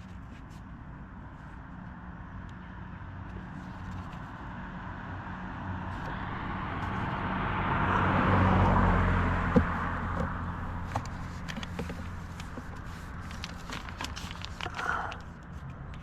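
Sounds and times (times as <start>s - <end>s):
road vehicle passing by: 1.0s - 16.0s
light clicks and rustles: 9.6s - 16.0s.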